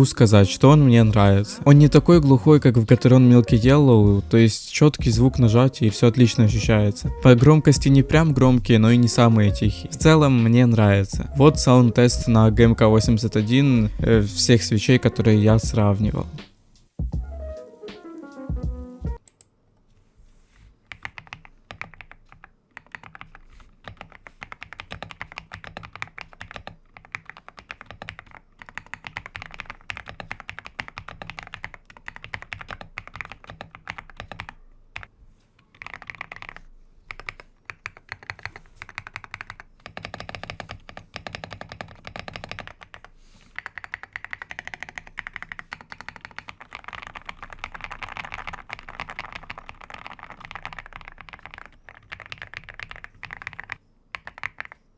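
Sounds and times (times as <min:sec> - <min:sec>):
mechanical keyboard typing: 0:20.9 - 0:35.1, 0:35.7 - 0:54.9.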